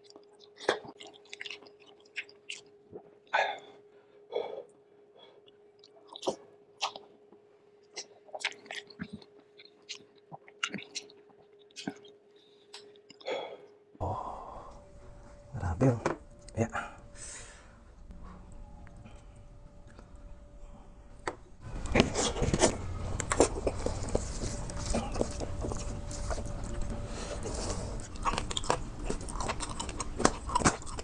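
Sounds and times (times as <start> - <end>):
wet chewing and lip smacks: 0.0 - 3.1, 5.4 - 7.2, 7.8 - 13.3, 21.8 - 31.0
faint steady hum: 0.0 - 31.0.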